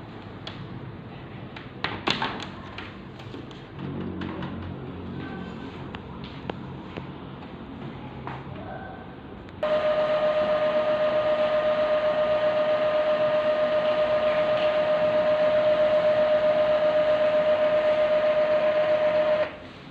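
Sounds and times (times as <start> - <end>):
inkjet printer whining and whirring: 9.6 - 19.7.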